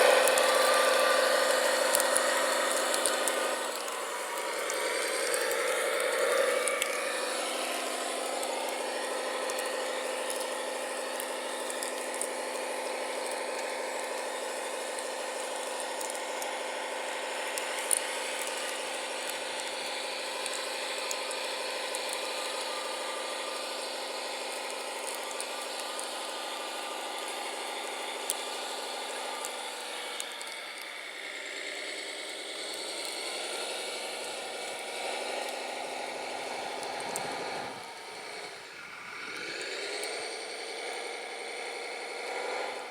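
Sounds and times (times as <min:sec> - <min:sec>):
faint clicks: 0:00.0 - 0:07.0, 0:09.4 - 0:10.6, 0:29.4 - 0:31.0, 0:32.6 - 0:35.6, 0:39.2 - 0:42.9
small electric motor whining: 0:00.0 - 0:42.9.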